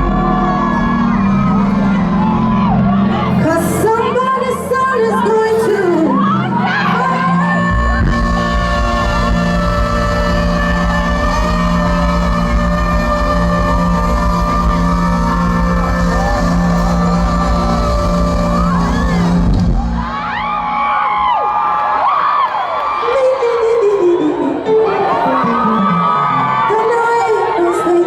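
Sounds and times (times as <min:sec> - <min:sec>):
heavy steady bass: 0:07.6 - 0:20.3.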